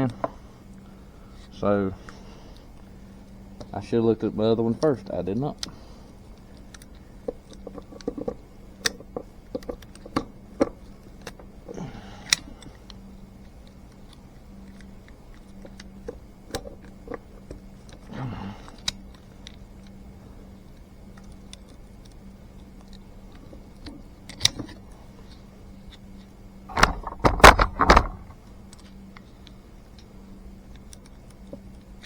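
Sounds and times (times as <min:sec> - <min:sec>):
steady low hum: 0:00.0 - 0:32.0
metal parts clicking and tapping: 0:03.6 - 0:20.0, 0:26.7 - 0:29.3.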